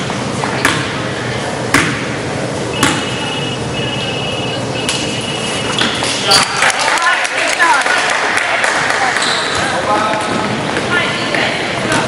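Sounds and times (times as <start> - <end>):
basketball bouncing on hardwood floor: 0.4 - 0.9, 1.7 - 2.0, 2.8 - 3.2.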